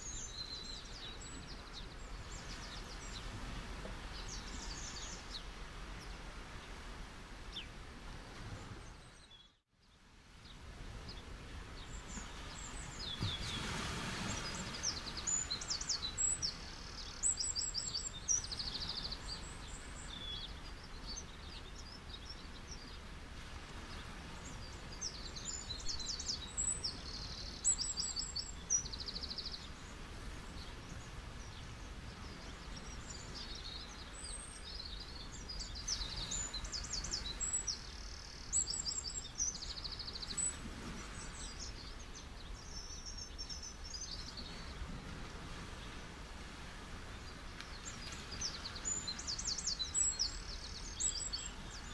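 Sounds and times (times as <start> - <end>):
small birds chirping: 8.8 - 23.1, 23.9 - 45.0, 47.2 - 51.9
steady background hiss: 9.8 - 51.9.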